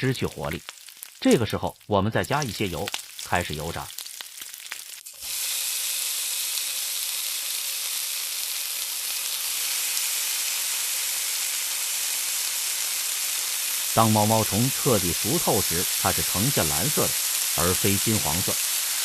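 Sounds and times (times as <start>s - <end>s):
hot oil sizzling: 0.0s - 19.0s.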